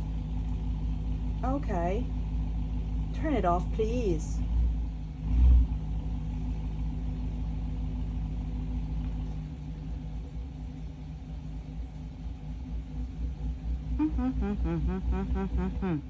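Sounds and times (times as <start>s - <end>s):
car engine idling: 0.0s - 16.0s.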